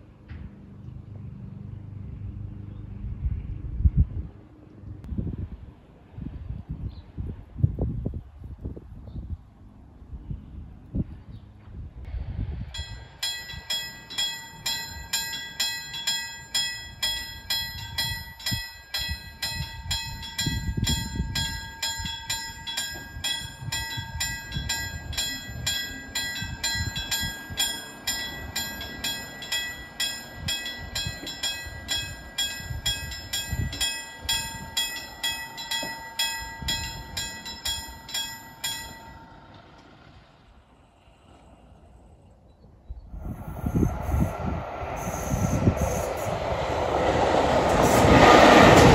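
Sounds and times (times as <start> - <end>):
level crossing warning bell: 12.7 - 40.2.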